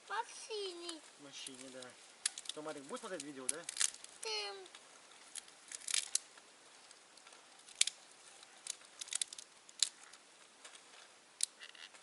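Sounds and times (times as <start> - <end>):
dry twigs and leaves crackling: 0.0 - 12.0.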